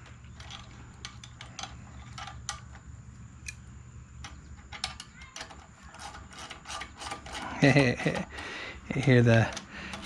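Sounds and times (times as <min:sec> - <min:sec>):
steady low hum: 0:00.0 - 0:10.0
small metal tools clicking: 0:04.2 - 0:08.4.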